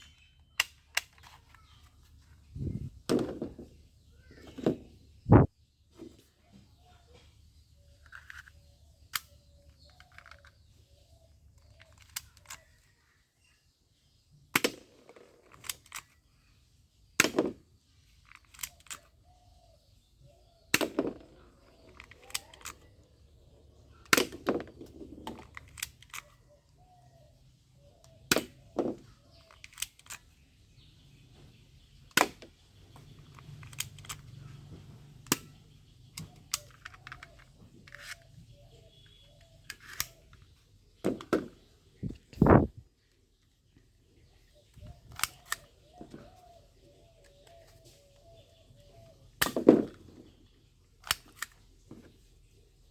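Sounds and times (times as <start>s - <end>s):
toy guns popping: 24.0s - 26.3s, 28.2s - 30.3s, 49.4s - 50.0s.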